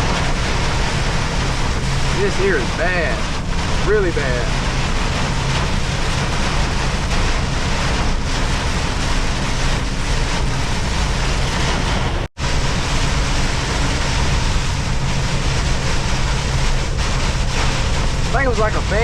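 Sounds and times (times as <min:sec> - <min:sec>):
diesel engine droning: 0:00.0 - 0:19.0
heavy rain and tyre spray: 0:00.0 - 0:19.0.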